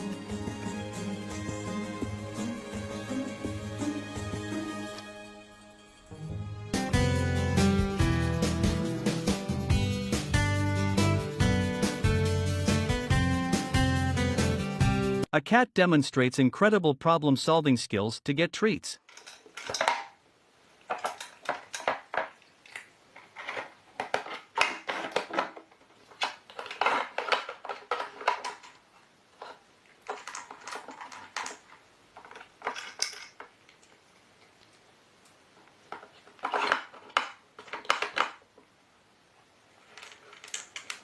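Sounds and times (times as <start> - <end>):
hard puzzle pieces clattering: 19.1 - 20.2, 20.9 - 33.8, 36.0 - 38.4, 39.8 - 41.0.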